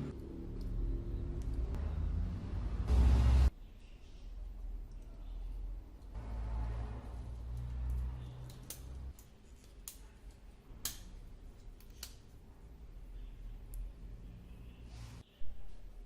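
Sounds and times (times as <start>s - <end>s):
low hum: 0.0s - 3.5s
sharp light metal clicks: 7.5s - 12.2s.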